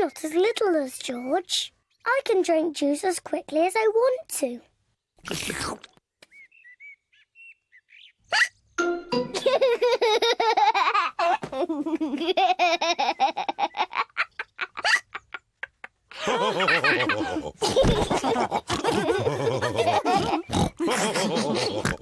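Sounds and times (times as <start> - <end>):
cartoon pigs laughing: 8.3 - 8.6, 9.3 - 22.0
pigs oinking: 18.3 - 22.0.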